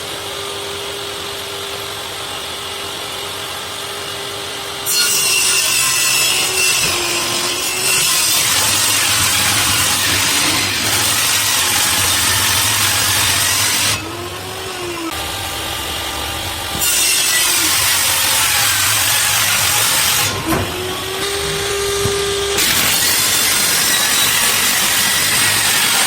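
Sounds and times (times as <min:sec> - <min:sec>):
power tool cutting wood: 0:04.8 - 0:26.0
motor humming: 0:17.5 - 0:26.0.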